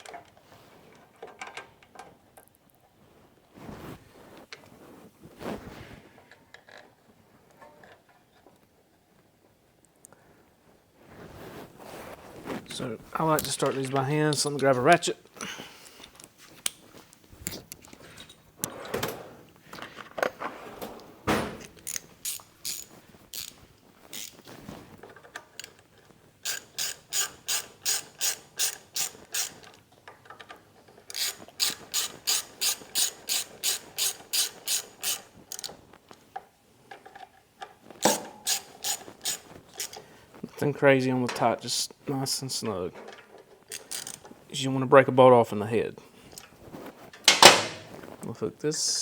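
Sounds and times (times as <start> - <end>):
hand ratchet clicking: 21.6 - 24.5, 26.4 - 29.8, 31.1 - 35.8, 38.0 - 40.0, 43.7 - 44.3.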